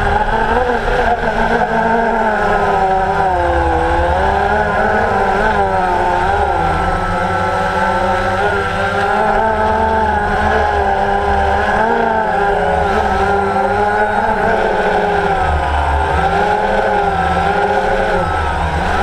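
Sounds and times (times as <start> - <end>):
drone motors whining: 0.0 - 19.0.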